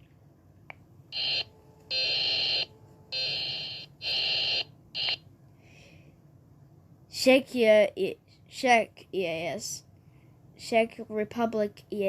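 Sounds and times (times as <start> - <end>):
buzzy emergency alert alarm: 1.1 - 5.2.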